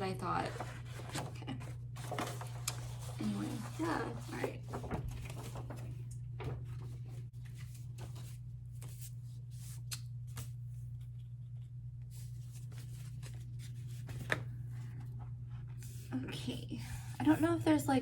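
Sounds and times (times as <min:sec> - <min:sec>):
steady low hum: 0:00.0 - 0:18.0
paper rustling and tapping: 0:00.4 - 0:10.5, 0:12.2 - 0:15.9.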